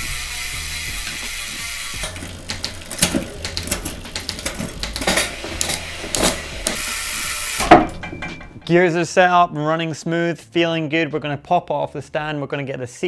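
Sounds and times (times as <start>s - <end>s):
bicycle chain hissing over cassette: 0.0s - 7.7s
sharp mechanical gear clicks: 1.1s - 7.8s.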